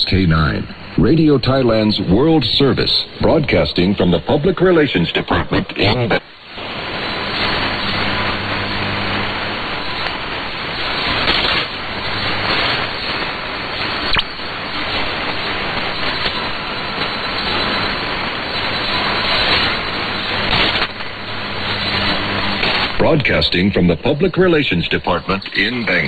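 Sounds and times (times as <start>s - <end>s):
faint hum: 0.0s - 26.0s
radio static hiss: 0.0s - 26.0s
sharp radio crackle: 0.0s - 26.0s.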